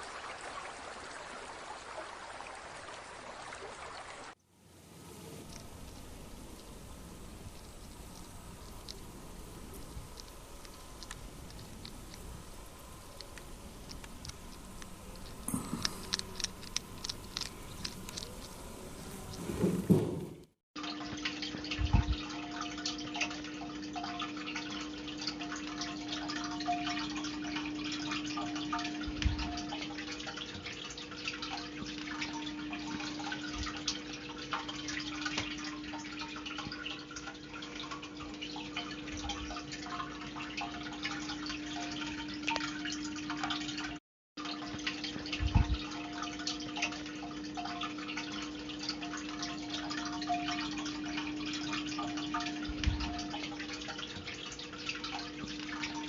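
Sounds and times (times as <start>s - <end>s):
water dripping and trickling: 0.0s - 56.0s
low hum: 4.6s - 20.6s.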